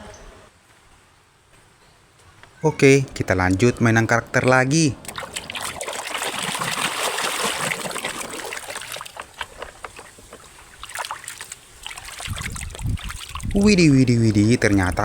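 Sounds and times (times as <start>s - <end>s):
water splashing and trickling: 3.4s - 15.0s.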